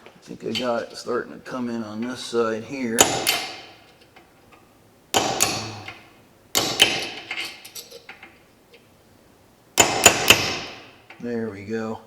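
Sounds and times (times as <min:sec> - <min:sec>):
hammer striking metal chisel: 0:03.0 - 0:03.8, 0:05.1 - 0:06.0, 0:06.6 - 0:08.1, 0:09.8 - 0:11.0.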